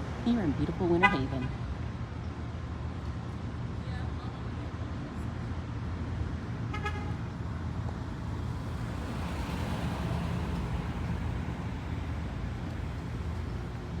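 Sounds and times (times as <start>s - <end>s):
road traffic rumble: 0.0s - 14.0s
vehicle passing: 8.2s - 13.4s.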